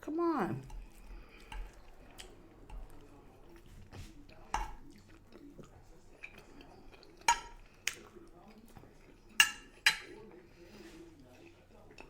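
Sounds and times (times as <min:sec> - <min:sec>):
wet chewing and lip-smacking: 0:00.8 - 0:09.4.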